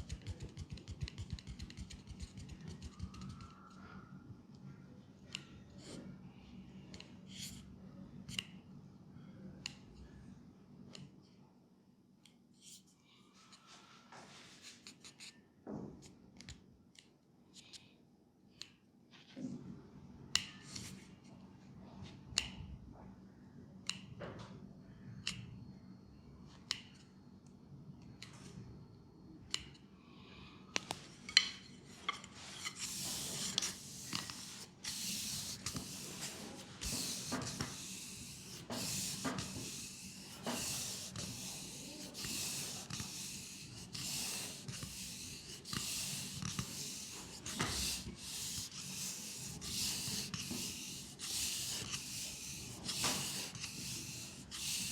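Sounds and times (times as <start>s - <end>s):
hands rubbing skin: 0.0s - 3.5s, 32.5s - 54.9s.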